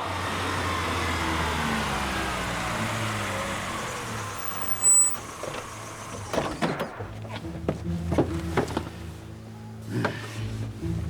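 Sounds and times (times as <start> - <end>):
vehicle engine: 0.0 - 11.0
high-pitched squeal: 3.8 - 7.1.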